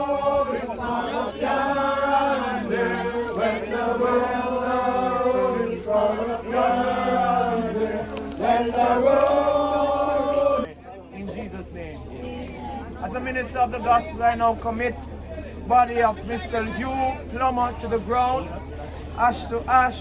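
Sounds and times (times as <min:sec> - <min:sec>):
group singing a hymn: 0:00.0 - 0:10.7.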